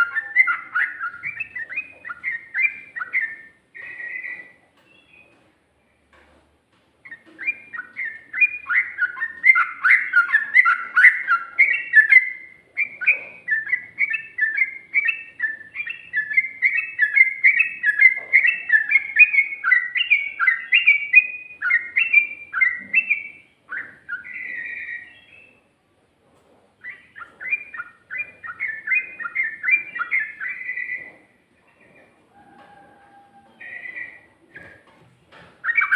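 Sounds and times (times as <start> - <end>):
bird singing fast song: 0.0 - 5.4, 7.0 - 25.7, 26.8 - 32.2, 35.6 - 35.9.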